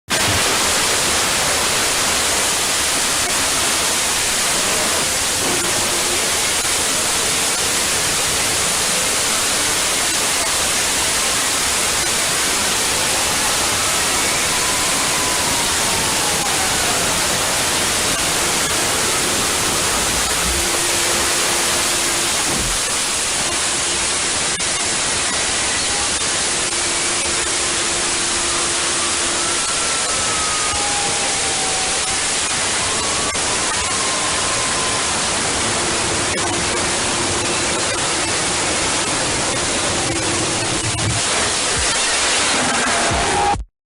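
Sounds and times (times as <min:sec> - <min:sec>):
loud static hiss: 0:00.1 - 0:43.7.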